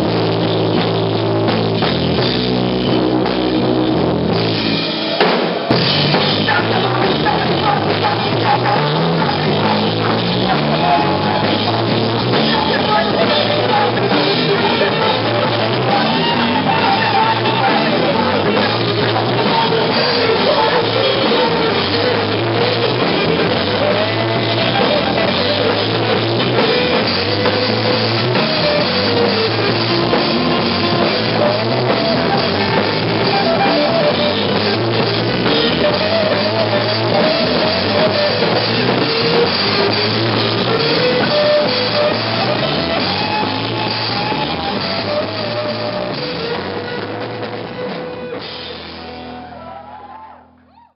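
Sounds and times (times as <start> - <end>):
blues-rock band playing: 0.0 - 50.7.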